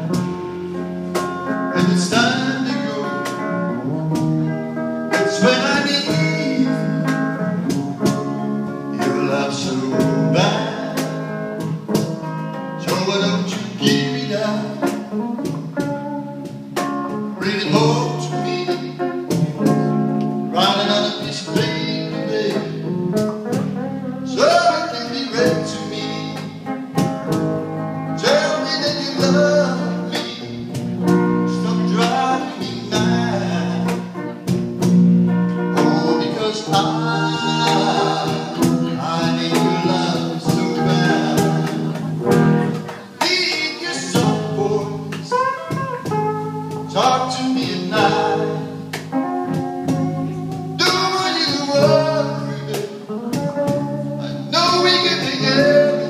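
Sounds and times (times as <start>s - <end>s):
live band playing slow song: 0.0s - 56.0s
person singing: 1.7s - 4.4s, 8.9s - 11.3s, 12.8s - 15.0s, 17.4s - 19.8s, 20.5s - 23.7s, 24.3s - 26.7s, 28.2s - 34.4s, 35.8s - 46.0s, 46.9s - 56.0s.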